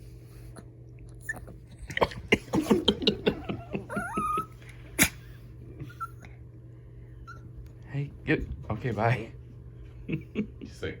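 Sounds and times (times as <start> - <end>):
dog yipping and whining: 1.2 - 1.6, 3.9 - 5.2, 5.8 - 6.3, 7.2 - 7.5.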